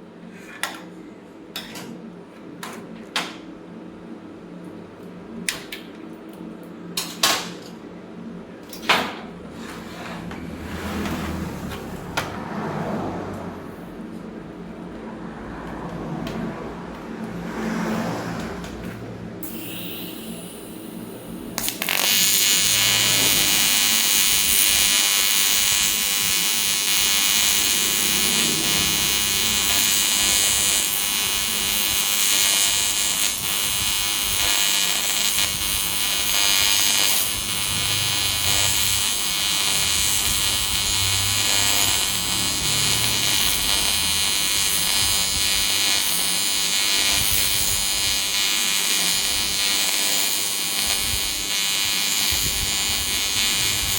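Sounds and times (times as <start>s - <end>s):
welding arc buzzing: 19.4s - 53.9s
welding arc striking crack: 19.4s - 53.9s.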